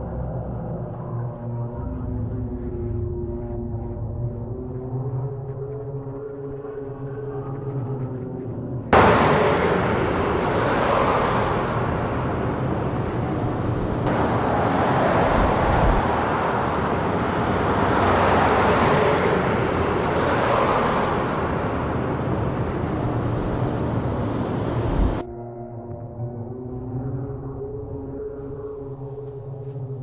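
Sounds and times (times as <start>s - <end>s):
road traffic noise: 8.9s - 25.2s.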